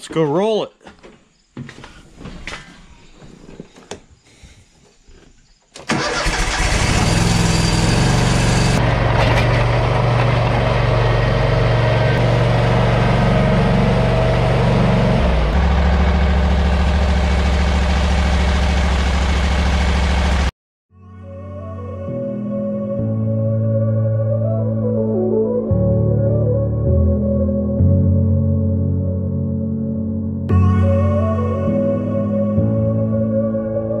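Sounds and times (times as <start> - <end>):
engine starting and running: 5.8 - 20.5.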